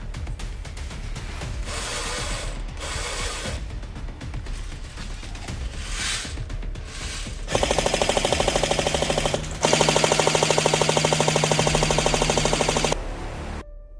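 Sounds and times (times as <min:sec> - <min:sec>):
electric gun firing full-auto: 0:01.6 - 0:03.6, 0:04.5 - 0:13.0
gearbox motor whine: 0:01.6 - 0:03.6, 0:04.6 - 0:13.0.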